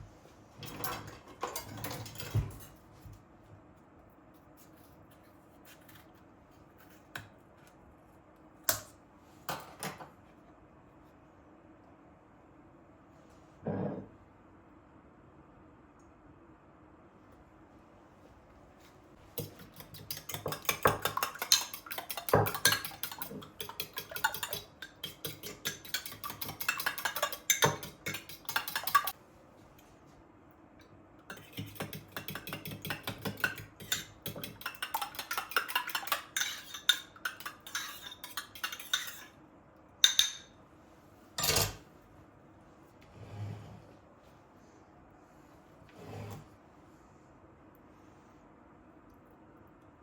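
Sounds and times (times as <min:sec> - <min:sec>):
dishes and cutlery clattering: 0:00.6 - 0:02.8, 0:19.4 - 0:29.2, 0:31.3 - 0:39.3, 0:41.4 - 0:41.8.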